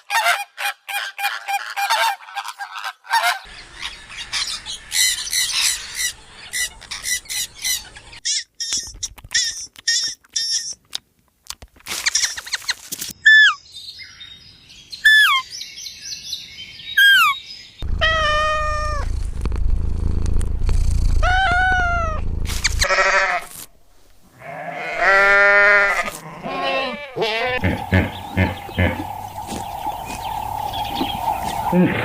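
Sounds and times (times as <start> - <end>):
loud low rumble: 17.8 - 22.8
goats bleating: 22.8 - 23.5, 24.3 - 29.0.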